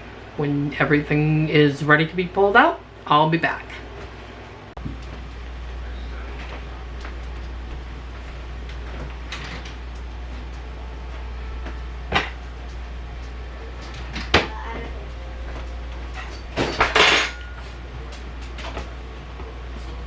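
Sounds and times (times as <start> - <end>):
steady low hum: 0.0 - 20.0
kitchen clattering: 15.4 - 18.8.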